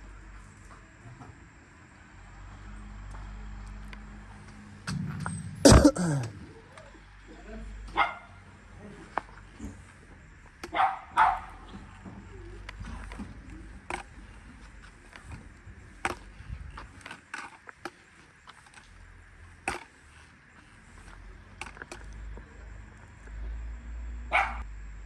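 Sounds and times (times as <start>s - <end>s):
dog barking: 8.0s - 8.4s, 10.7s - 11.7s, 24.3s - 24.6s.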